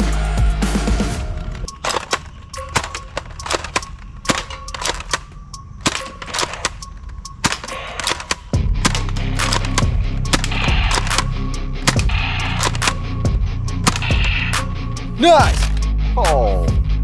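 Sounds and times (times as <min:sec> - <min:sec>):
toy gun firing sharp shots: 0:15.2 - 0:15.8.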